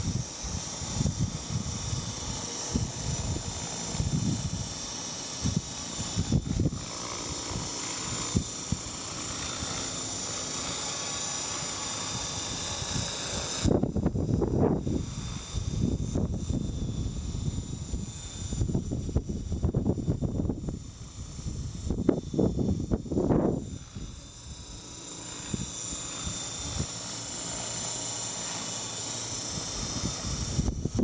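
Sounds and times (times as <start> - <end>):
wind buffeting microphone: 0.0 - 4.8, 5.4 - 9.0, 12.1 - 24.8, 29.4 - 31.0
model helicopter rotor whine: 0.0 - 31.0.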